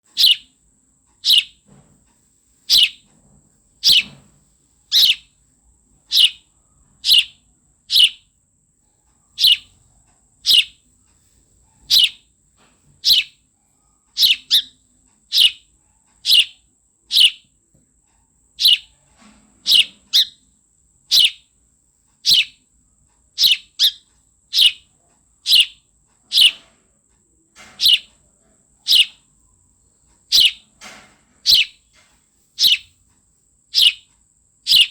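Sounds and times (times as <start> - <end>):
sparrow chirping: 0.1 - 0.5, 1.2 - 1.6, 2.7 - 3.0, 3.8 - 4.2, 4.9 - 5.3, 6.1 - 8.3, 9.3 - 9.8, 10.4 - 10.8, 11.8 - 12.3, 13.0 - 13.4, 14.1 - 17.5, 18.6 - 19.0, 19.6 - 20.4, 21.1 - 21.5, 22.2 - 22.6, 23.4 - 26.7, 27.6 - 28.1, 28.8 - 29.2, 30.3 - 30.8, 31.4 - 31.9, 32.6 - 33.0, 33.7 - 34.1, 34.7 - 34.9.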